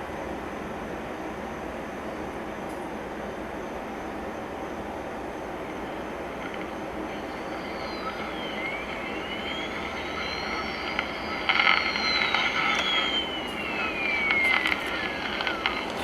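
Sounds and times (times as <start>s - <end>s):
radio static hiss: 5.3s - 16.0s
radio crackling: 5.5s - 16.0s
whistles sliding in pitch: 5.7s - 16.0s.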